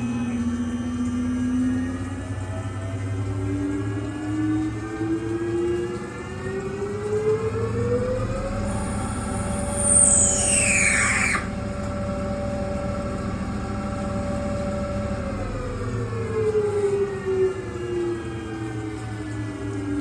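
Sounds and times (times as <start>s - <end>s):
lathe spindle whine: 8.5s - 15.6s
loud high squeal: 8.6s - 11.8s.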